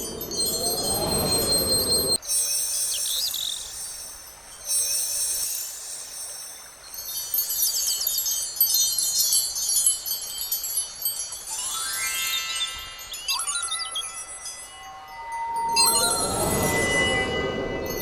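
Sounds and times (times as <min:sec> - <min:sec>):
rising sweep of tones: 0:00.0 - 0:02.2, 0:11.6 - 0:18.0
tinkling magic sparkle chimes: 0:00.0 - 0:18.0.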